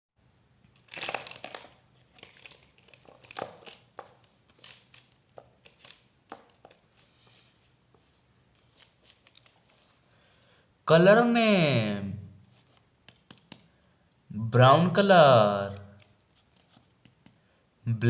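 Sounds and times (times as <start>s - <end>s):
crinkling and rustling: 0.6s - 10.2s, 12.4s - 13.6s, 15.9s - 17.2s.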